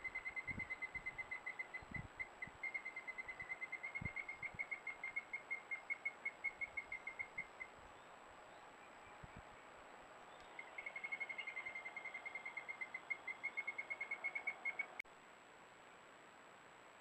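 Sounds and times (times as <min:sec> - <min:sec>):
bird trilling: 0:00.0 - 0:07.8, 0:10.5 - 0:15.0.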